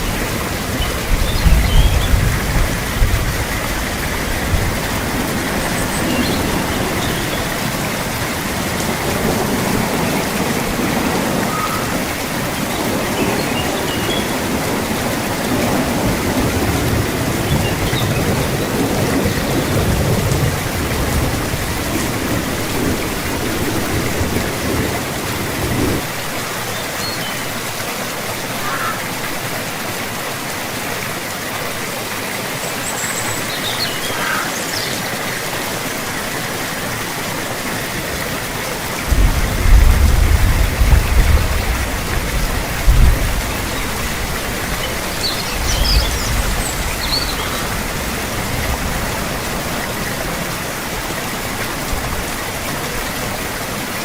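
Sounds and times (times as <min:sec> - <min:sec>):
low rumbles of thunder: 0:00.0 - 0:26.0, 0:39.0 - 0:49.9
steady rain falling: 0:00.0 - 0:54.0.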